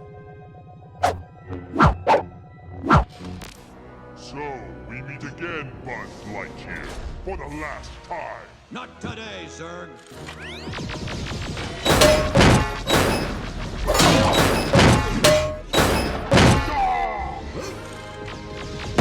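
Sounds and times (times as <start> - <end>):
background music: 0.0 - 19.0
cartoon impact thuds and whacks: 1.0 - 2.3, 11.9 - 16.8.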